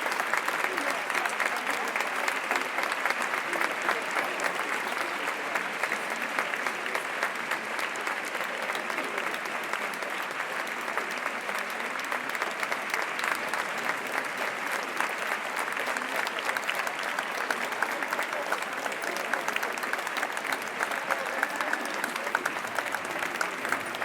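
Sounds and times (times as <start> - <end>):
crowd applauding: 0.0 - 24.0.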